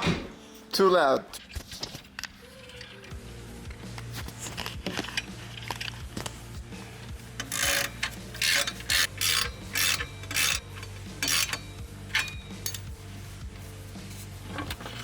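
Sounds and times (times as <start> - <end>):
ratchet wrench rasping: 7.0 - 13.0.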